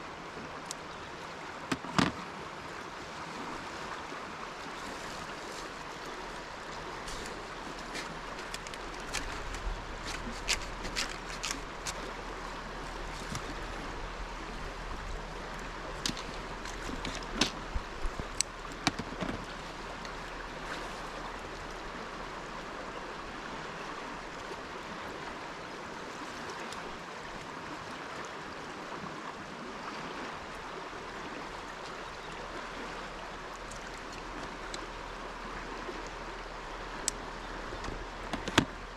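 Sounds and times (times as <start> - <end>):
river water rushing: 0.0 - 38.9
sharp clicks and knocks: 17.0 - 17.6, 18.4 - 19.4, 37.8 - 38.8.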